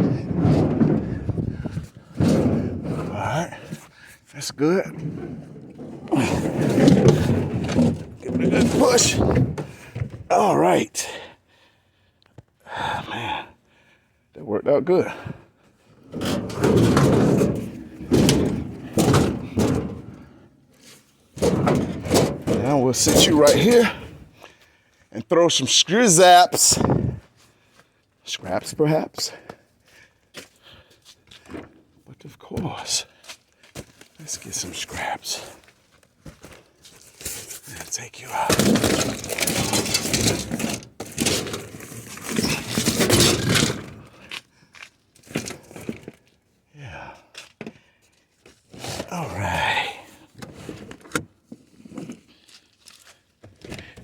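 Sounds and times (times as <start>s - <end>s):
metal bangs and thuds: 0.0s - 3.8s, 5.0s - 10.3s, 16.1s - 20.4s, 21.4s - 24.3s, 38.5s - 44.0s
refrigerator scraping on floor: 0.0s - 3.8s, 4.8s - 10.2s, 16.0s - 24.3s, 38.3s - 44.2s, 48.7s - 49.2s.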